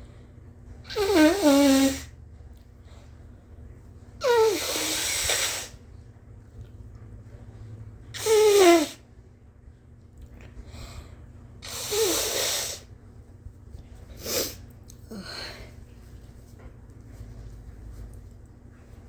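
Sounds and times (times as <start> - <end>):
woman sneezing: 8.2 - 9.0
woman breathing: 14.1 - 16.0.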